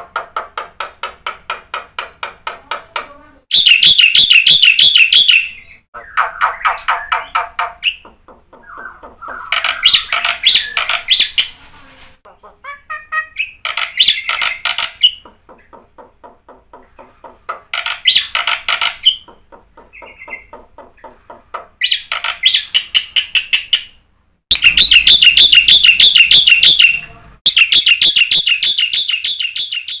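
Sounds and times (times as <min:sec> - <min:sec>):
bird singing rapid notes: 0:03.5 - 0:11.4, 0:16.9 - 0:21.2, 0:24.5 - 0:30.0.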